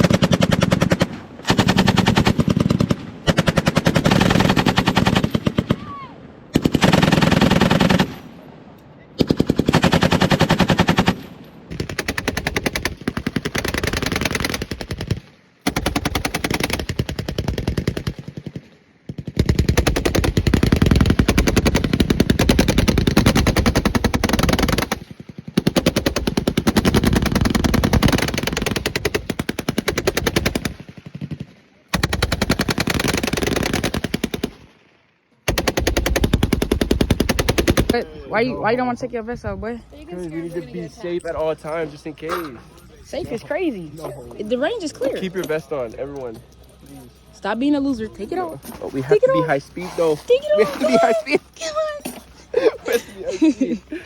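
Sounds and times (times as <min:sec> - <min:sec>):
machine-gun fire: 0:00.0 - 0:05.8, 0:06.5 - 0:08.3, 0:09.2 - 0:34.7, 0:35.4 - 0:38.0.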